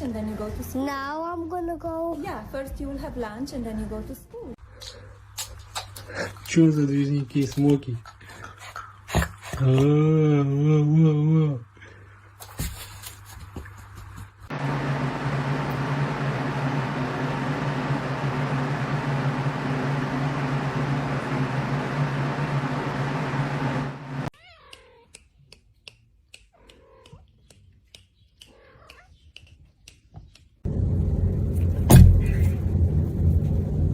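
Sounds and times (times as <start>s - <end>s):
loud whooshing motor hum: 14.5s - 24.3s, 30.7s - 33.9s
cat meowing: 24.4s - 25.2s, 26.5s - 27.2s, 28.5s - 29.2s.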